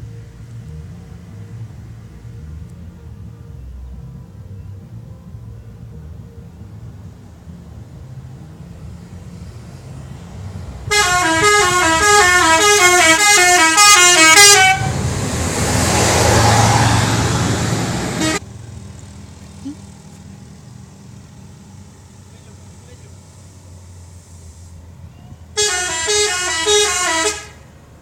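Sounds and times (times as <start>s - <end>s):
musical bus horn tune: 10.8s - 18.4s, 25.6s - 27.8s.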